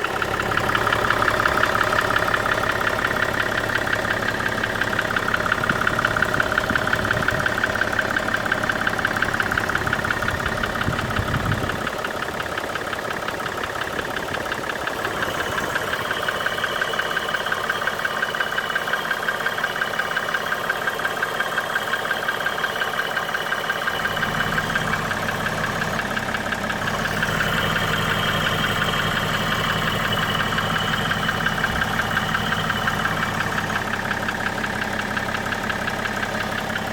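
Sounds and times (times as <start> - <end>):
diesel engine idling clattering: 0.0 - 36.9.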